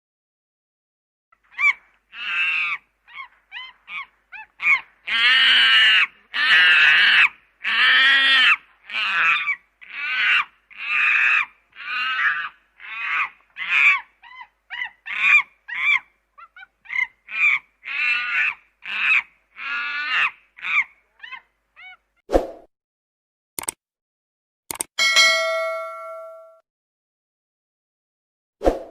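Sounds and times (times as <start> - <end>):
monkey calling and chirping: 1.4 - 22.0.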